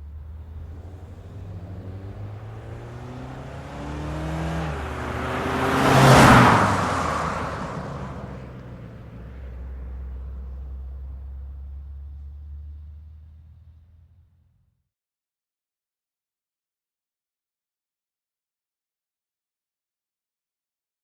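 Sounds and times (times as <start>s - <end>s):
car engine driving past: 0.0s - 14.4s.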